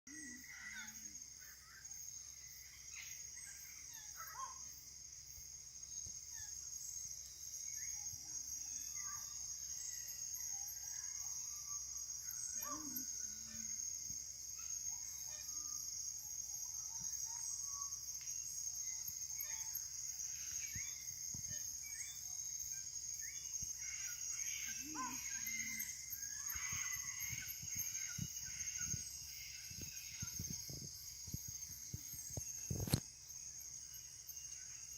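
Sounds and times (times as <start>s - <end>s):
high-pitched insect drone: 0.1s - 34.9s.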